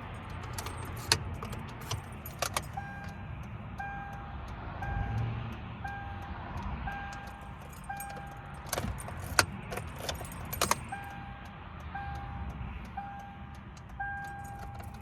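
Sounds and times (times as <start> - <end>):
keys jangling and clicking: 0.0 - 3.2, 7.1 - 11.2, 13.7 - 15.0
dashboard warning chime beeping: 0.0 - 15.0.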